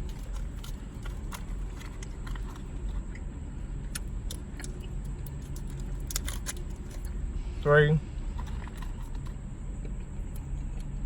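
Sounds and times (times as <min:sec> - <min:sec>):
small clicks and crinkles: 0:00.0 - 0:03.2, 0:03.9 - 0:07.1
chewing candy: 0:00.0 - 0:03.3, 0:03.9 - 0:07.1
low steady rumble: 0:00.0 - 0:11.0.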